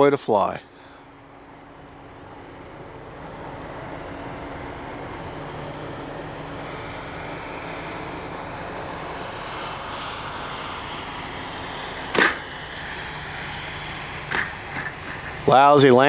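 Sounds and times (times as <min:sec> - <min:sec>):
airy rush with faint hum: 0:00.0 - 0:16.0
loud thump: 0:12.2 - 0:12.5.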